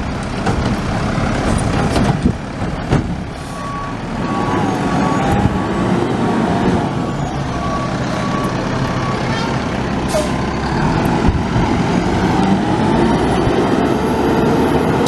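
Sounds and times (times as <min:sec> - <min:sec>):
garbage truck engine running: 0:00.0 - 0:15.0
backup alarm beeping: 0:03.4 - 0:09.7.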